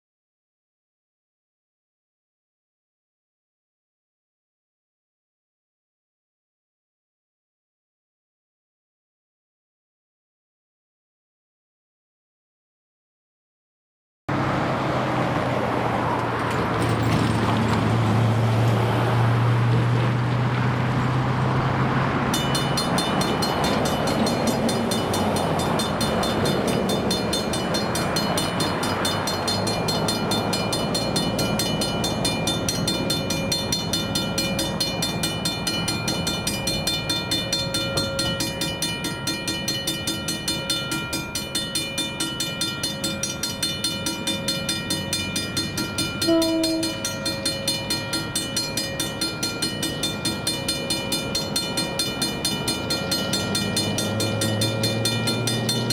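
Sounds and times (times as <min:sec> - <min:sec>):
passing rumble: 0:14.3 - 0:55.9
level crossing bell ringing: 0:22.3 - 0:55.9
horn blast: 0:46.2 - 0:47.3.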